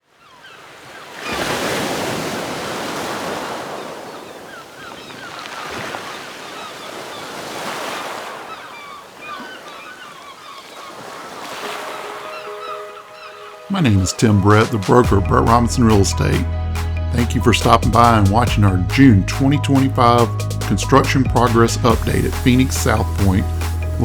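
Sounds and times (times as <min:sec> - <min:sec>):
ocean surf breaking: 0:00.2 - 0:24.0
small birds chirping: 0:03.8 - 0:15.0.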